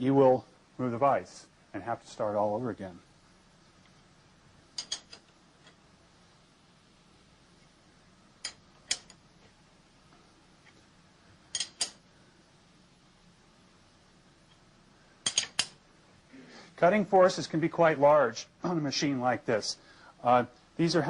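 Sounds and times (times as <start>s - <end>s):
wrench clinking on metal bolts: 4.8s - 5.3s, 8.4s - 9.2s, 11.5s - 12.0s, 15.2s - 15.8s.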